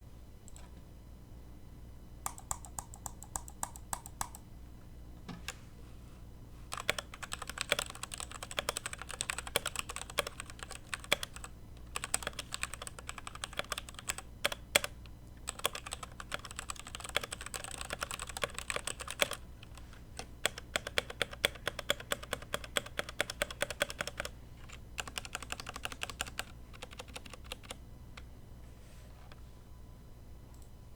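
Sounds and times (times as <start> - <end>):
mechanical keyboard typing: 2.2 - 4.4, 6.7 - 27.8.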